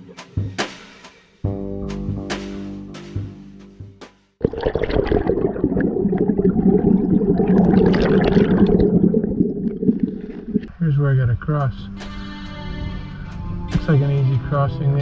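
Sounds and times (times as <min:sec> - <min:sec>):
intro music: 0:00.0 - 0:04.4.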